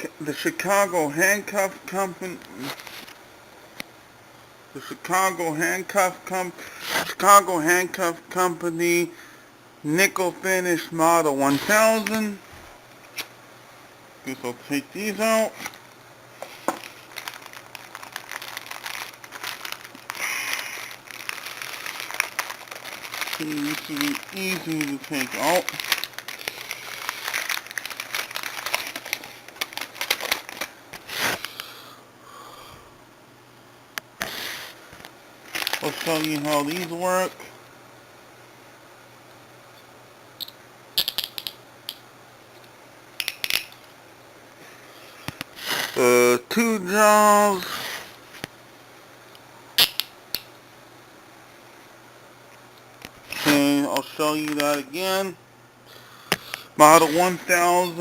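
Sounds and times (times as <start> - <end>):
plastic packaging crinkling: 16.4 - 31.6, 35.0 - 36.9.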